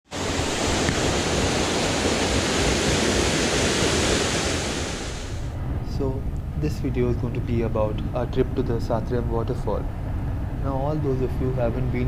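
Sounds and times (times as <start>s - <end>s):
waterfall rushing: 0.1s - 5.5s.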